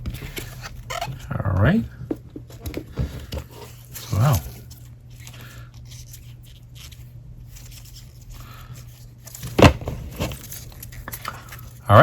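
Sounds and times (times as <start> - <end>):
low steady hum: 0.0 - 12.0
trading cards rustling: 2.7 - 12.0.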